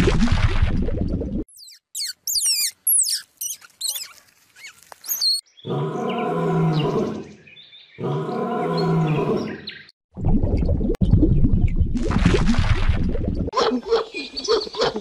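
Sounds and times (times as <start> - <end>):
quick high chirps: 1.5 - 5.4
low roar-like animal calls: 5.6 - 7.4, 8.0 - 9.7.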